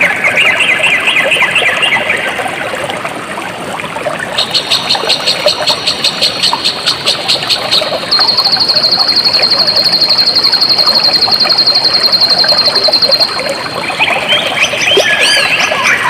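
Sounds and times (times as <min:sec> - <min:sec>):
stream water trickling: 0:00.0 - 0:16.0
high chirping animal calls: 0:13.9 - 0:16.0.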